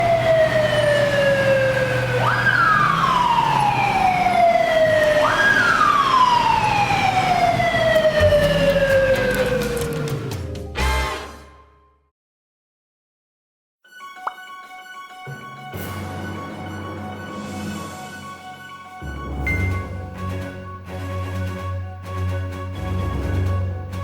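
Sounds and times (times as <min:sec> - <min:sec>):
police motorcycle siren wailing: 0:00.0 - 0:10.4.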